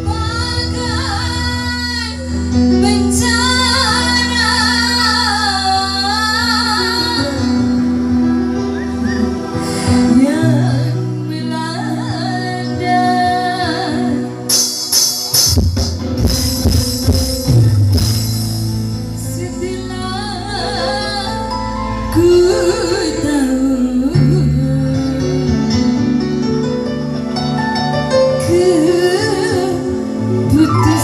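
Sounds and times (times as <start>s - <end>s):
drum hits: 14.5s - 18.7s
bass notes: 15.5s - 31.0s.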